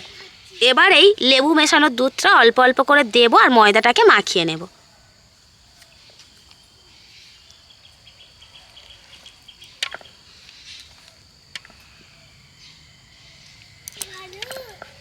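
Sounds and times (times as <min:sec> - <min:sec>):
insects chirping: 0:00.0 - 0:15.0
sharp clicks: 0:13.8 - 0:14.6.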